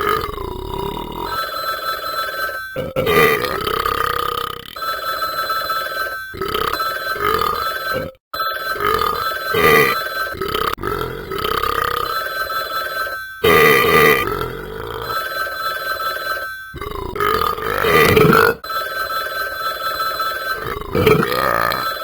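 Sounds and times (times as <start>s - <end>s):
man burping loudly: 0.0s - 1.4s, 2.8s - 4.8s, 6.4s - 8.2s, 8.8s - 12.2s, 13.4s - 15.2s, 16.8s - 18.7s, 20.6s - 22.0s
phone ringing: 0.0s - 22.0s.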